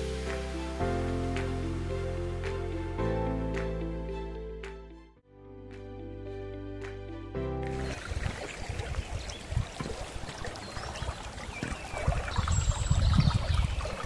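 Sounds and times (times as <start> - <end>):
brook water rushing and trickling: 0.0 - 3.1, 7.6 - 14.0
low rumbles on microphone: 7.8 - 14.0.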